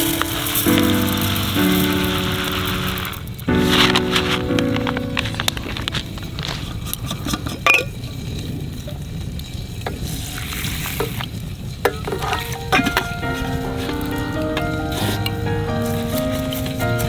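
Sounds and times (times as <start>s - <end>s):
food sizzling in a pan: 0.0s - 4.6s
utensils clicking and knocking: 0.0s - 7.7s.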